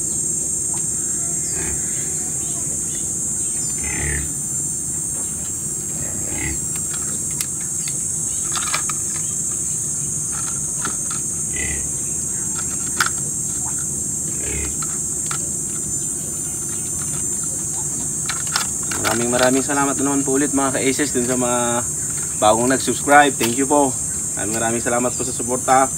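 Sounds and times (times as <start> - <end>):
insects chirping: 0.0 - 25.9.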